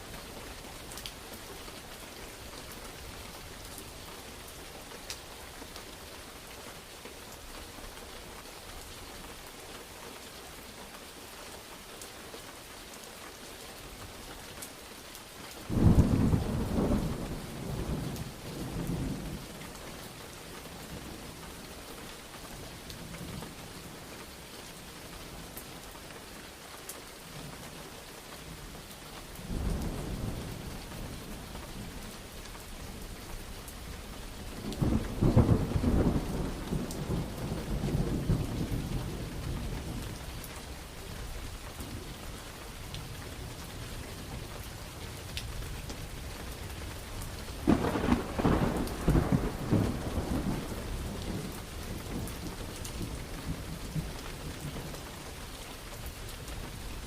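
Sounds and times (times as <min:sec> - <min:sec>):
steady rain falling: 0:00.0 - 0:57.0
rolling thunder: 0:47.6 - 0:54.6.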